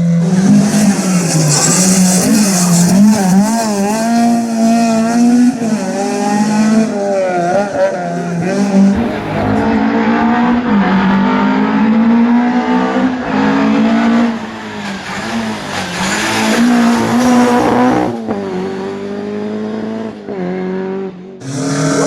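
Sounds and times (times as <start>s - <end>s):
rally car engine revving: 0.0s - 22.0s.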